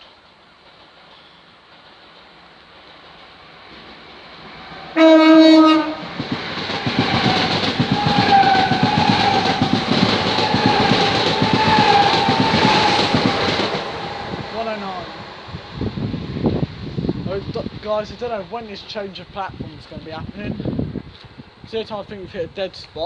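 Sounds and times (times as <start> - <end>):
train wheel clatter: 0.0 - 19.0
train high whine: 0.0 - 21.8
train horn blast: 4.9 - 6.1, 7.0 - 13.6.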